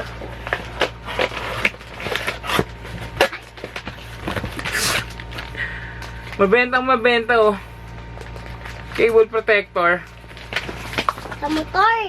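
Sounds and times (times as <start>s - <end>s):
packaging rustling and crinkling: 0.0s - 6.4s, 7.8s - 11.8s.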